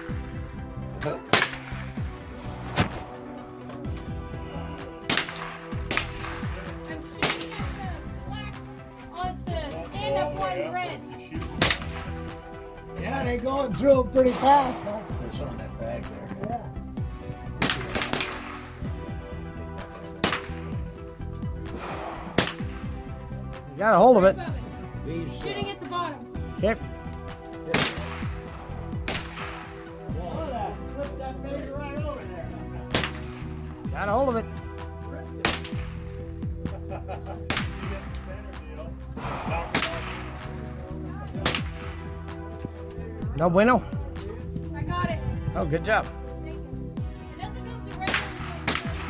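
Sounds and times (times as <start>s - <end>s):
background music: 0.0s - 49.0s
rifle shots cracking: 1.3s - 2.0s, 5.0s - 7.8s, 17.6s - 18.7s, 19.9s - 20.8s, 21.7s - 23.0s, 27.7s - 28.4s, 29.1s - 29.8s, 32.9s - 33.5s, 35.4s - 36.0s, 37.5s - 38.0s, 39.2s - 40.5s, 41.4s - 42.0s, 48.0s - 49.0s.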